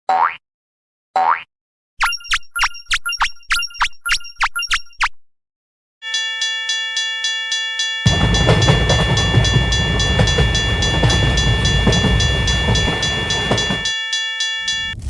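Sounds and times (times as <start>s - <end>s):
crossing warning bell dinging: 6.0s - 15.0s
train rumbling and clattering: 8.1s - 14.0s.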